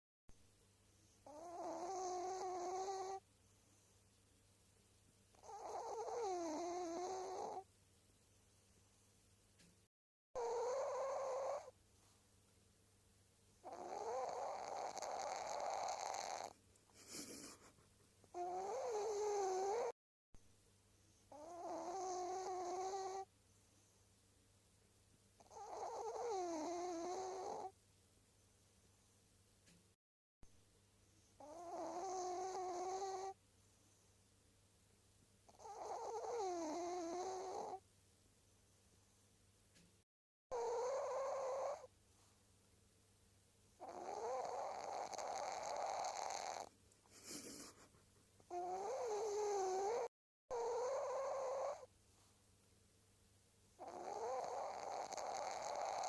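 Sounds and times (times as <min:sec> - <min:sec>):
quiet breathing: 0:00.8 - 0:01.3, 0:03.2 - 0:04.2, 0:20.8 - 0:21.3, 0:23.2 - 0:24.2, 0:33.2 - 0:34.4, 0:41.8 - 0:42.6, 0:46.6 - 0:48.6, 0:51.3 - 0:52.6
snoring: 0:01.2 - 0:03.2, 0:05.4 - 0:07.7, 0:10.4 - 0:11.8, 0:13.6 - 0:17.6, 0:18.3 - 0:20.0, 0:21.3 - 0:23.3, 0:25.4 - 0:27.8, 0:31.4 - 0:33.4, 0:35.5 - 0:37.8, 0:40.5 - 0:41.9, 0:43.8 - 0:47.8, 0:48.5 - 0:51.9, 0:53.8 - 0:56.0.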